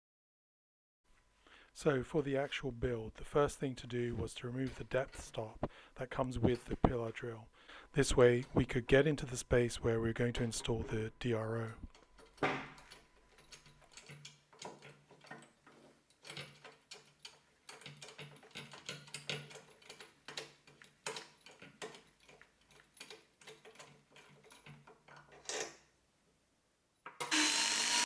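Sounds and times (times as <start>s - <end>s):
small clicks of metal parts: 11.6s - 25.8s.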